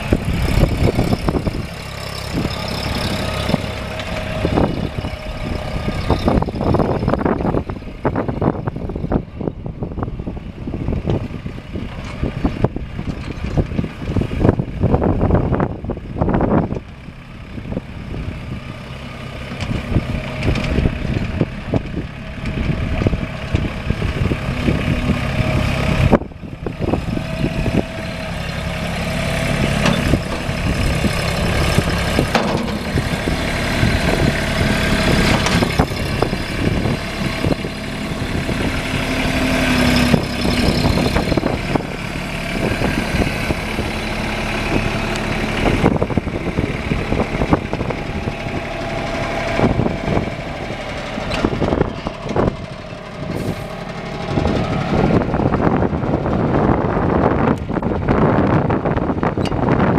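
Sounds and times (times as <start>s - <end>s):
tractor diesel engine running: 0.0s - 59.9s
knocks and clanks: 29.7s - 36.3s.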